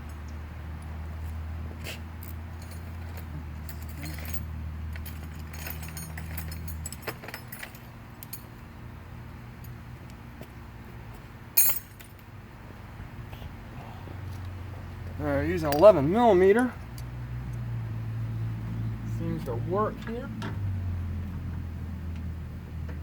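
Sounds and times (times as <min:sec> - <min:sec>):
metal sockets clinking and rattling: 0:03.7 - 0:08.5.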